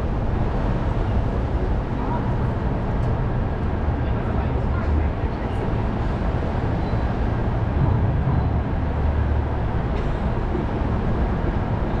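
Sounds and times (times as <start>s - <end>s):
tram engine and road rumble: 0.0s - 12.0s.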